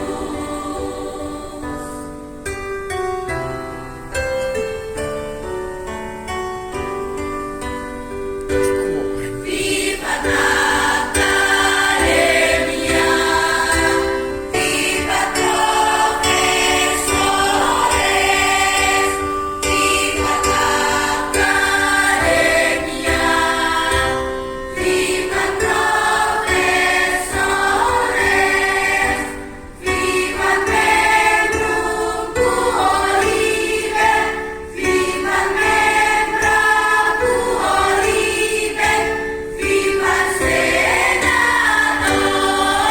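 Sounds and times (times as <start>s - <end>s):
choir singing in parts: 0.0s - 2.4s, 9.1s - 42.9s.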